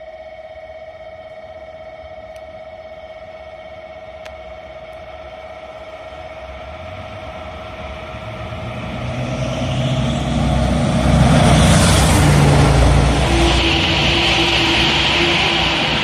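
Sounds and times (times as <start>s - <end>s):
train passing at speed: 5.4s - 16.0s.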